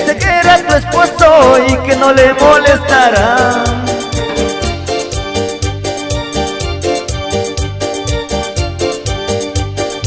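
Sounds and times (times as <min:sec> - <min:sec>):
keyboard playing chords: 0:00.0 - 0:10.0
bass notes: 0:00.8 - 0:08.8
steady percussion beat: 0:03.0 - 0:07.4.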